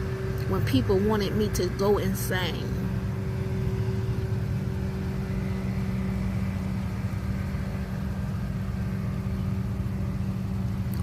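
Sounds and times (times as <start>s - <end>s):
low mechanical hum: 0.0s - 11.0s.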